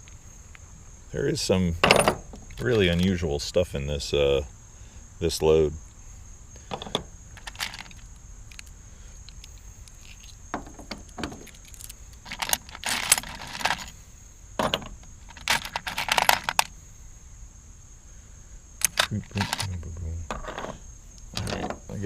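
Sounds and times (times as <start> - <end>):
small metal parts clinking: 1.8 - 3.2, 6.6 - 14.0, 14.6 - 16.7, 18.8 - 22.0.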